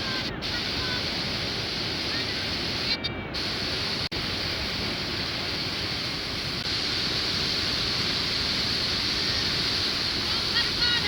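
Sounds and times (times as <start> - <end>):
whitewater rapids roaring: 5.8 - 11.0.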